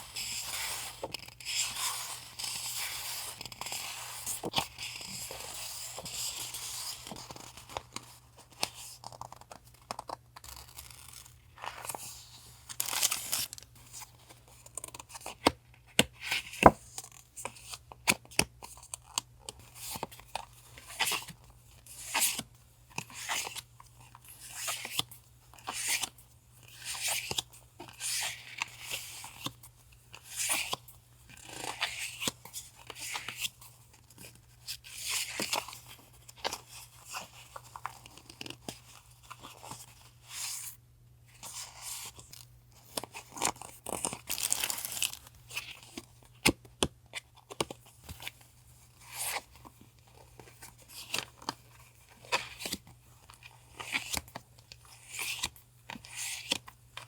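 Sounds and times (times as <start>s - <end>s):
wrappers crinkling and tearing: 43.3s - 45.8s.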